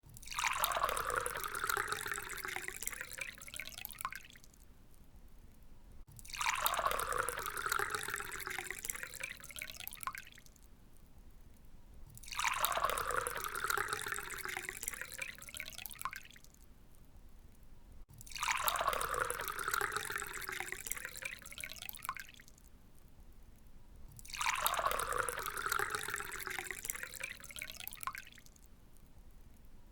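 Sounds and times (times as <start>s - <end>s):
water pouring into a glass: 0.1s - 4.4s, 6.2s - 10.5s, 12.2s - 16.5s, 18.2s - 22.5s, 24.2s - 28.5s.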